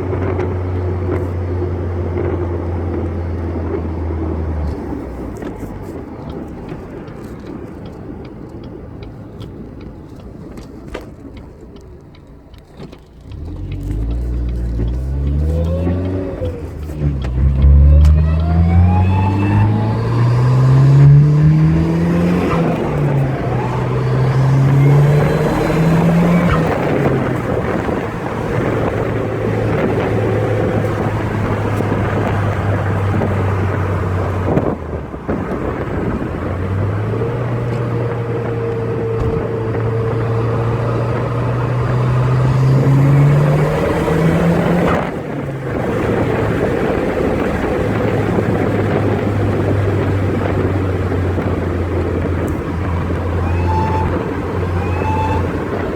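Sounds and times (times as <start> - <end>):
car engine revving: 0.0 - 7.5, 12.6 - 55.9
faint turbo whine: 12.2 - 55.9.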